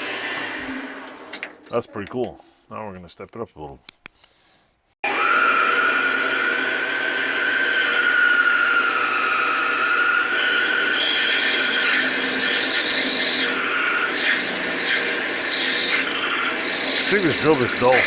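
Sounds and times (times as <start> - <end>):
drill bit squealing in metal: 10.5 - 18.0
scraping rub: 16.6 - 18.0.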